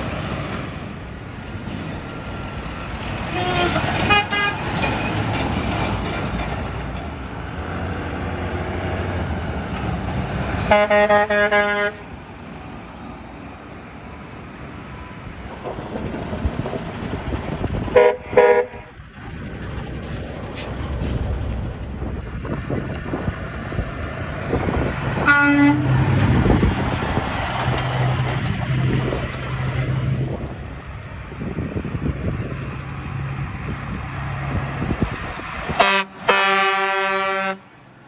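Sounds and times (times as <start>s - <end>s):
heavy truck engine drone: 0.0s - 38.0s
passing road traffic: 0.0s - 38.0s
truck horn blasts: 3.3s - 4.7s, 10.6s - 12.2s, 17.9s - 18.9s, 25.2s - 26.1s, 35.8s - 37.7s
lower-pitched horn toot: 17.9s - 18.9s, 25.2s - 26.0s.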